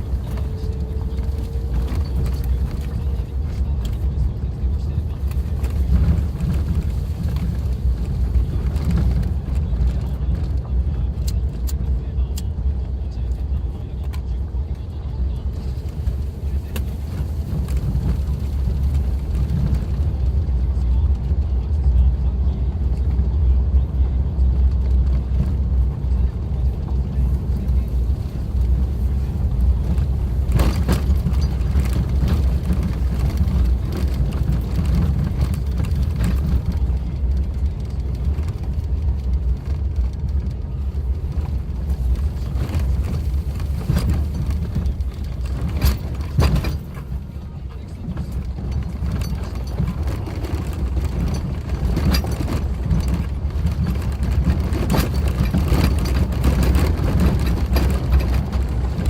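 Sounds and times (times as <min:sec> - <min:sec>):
vehicle engine and tyres rumbling: 0:00.0 - 0:59.0
knocks and clatters from bumps: 0:41.3 - 0:47.3, 0:48.0 - 0:59.0.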